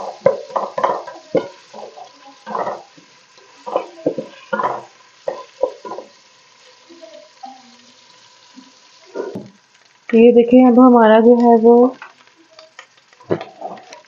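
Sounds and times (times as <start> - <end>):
onions sizzling: 0.0 - 14.0
spoon scraping pot: 0.2 - 3.0.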